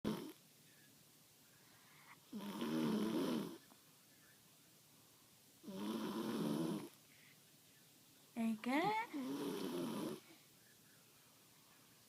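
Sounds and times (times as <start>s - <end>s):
girl snoring loudly: 0.1s - 0.4s, 2.3s - 3.6s, 5.7s - 6.9s, 9.2s - 10.2s.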